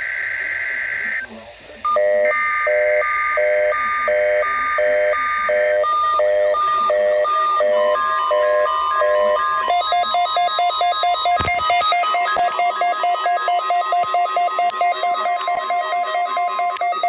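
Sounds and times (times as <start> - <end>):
harsh electronic data screech: 0.0 - 1.3
steady warning alarm tone: 0.0 - 17.0
repeating beeps: 1.8 - 17.0.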